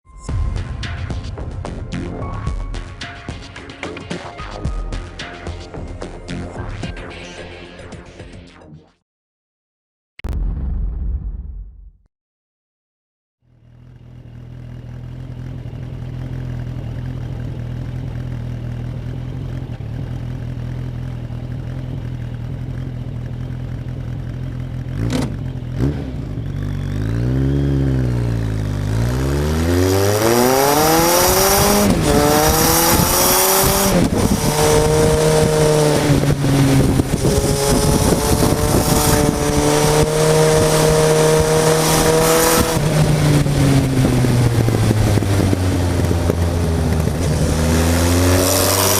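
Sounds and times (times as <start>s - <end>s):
motorcycle engine: 13.4s - 48.9s
wind rush on microphone: 30.9s - 48.0s.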